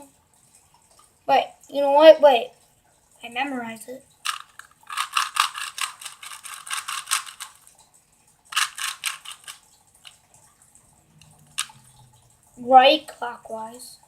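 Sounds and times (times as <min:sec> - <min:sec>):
puzzle cube layers clicking: 0:04.2 - 0:07.7, 0:08.5 - 0:10.2.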